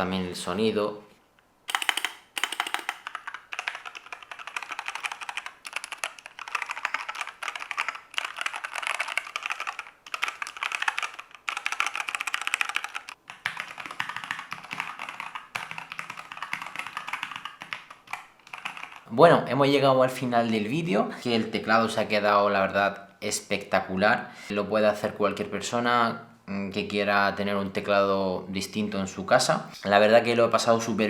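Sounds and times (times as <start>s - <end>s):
mechanical keyboard typing: 1.7s - 19.1s.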